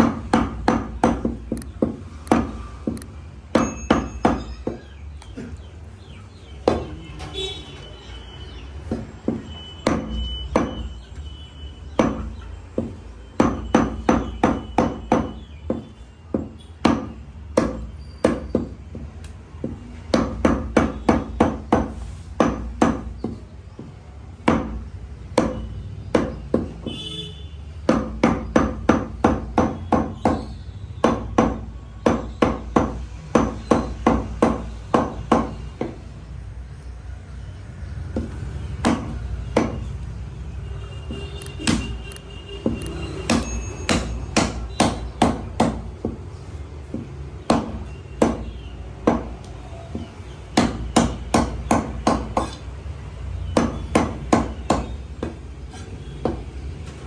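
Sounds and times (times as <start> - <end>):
cleaver chopping meat: 0.0 - 3.0, 8.8 - 11.0, 11.9 - 26.9, 27.8 - 36.0, 38.1 - 39.9, 41.5 - 52.6, 53.5 - 56.6.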